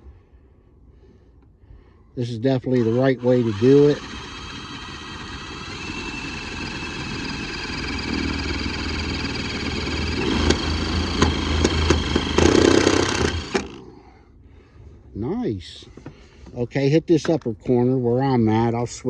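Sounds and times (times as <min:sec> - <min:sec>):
power drill driving a screw: 0:02.7 - 0:13.8.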